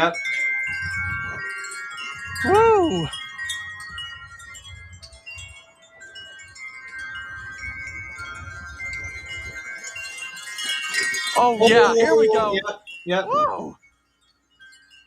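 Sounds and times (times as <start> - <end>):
wind rumble on microphone: 0.0 - 5.6, 6.4 - 12.7
wind chimes ringing: 0.0 - 15.0.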